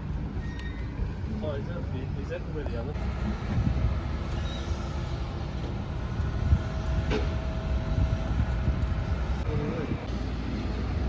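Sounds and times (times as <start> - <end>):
passing traffic rumble: 0.0 - 11.0.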